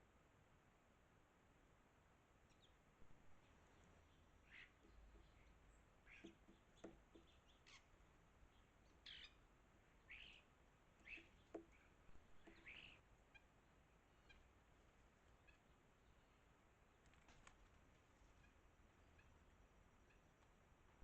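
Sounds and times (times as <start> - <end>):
faint bird chirps: 2.4 - 21.0
soft taps: 6.2 - 7.4, 11.2 - 12.7.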